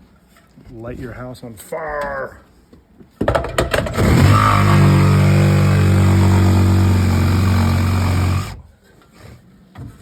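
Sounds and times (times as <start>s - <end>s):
power tool motor cutting wall: 3.8s - 8.6s.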